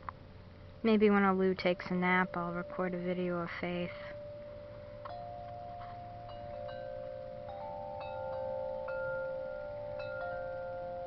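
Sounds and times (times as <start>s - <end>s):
wind chimes ringing: 1.6s - 11.0s.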